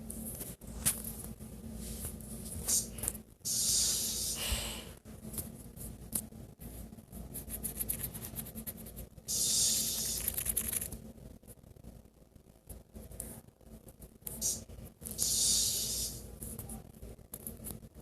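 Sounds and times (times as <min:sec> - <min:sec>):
drawn-out hisses: 0:03.5 - 0:04.8, 0:09.3 - 0:10.4, 0:15.2 - 0:16.2.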